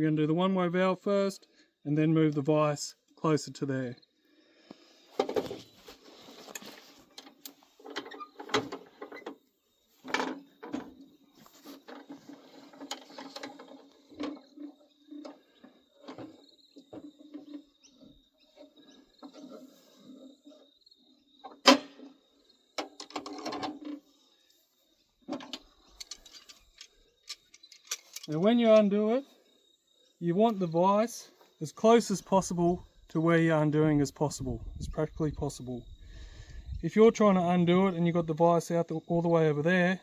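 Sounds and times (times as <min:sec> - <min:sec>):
metal vise clicking and rattling: 0:25.4 - 0:28.4.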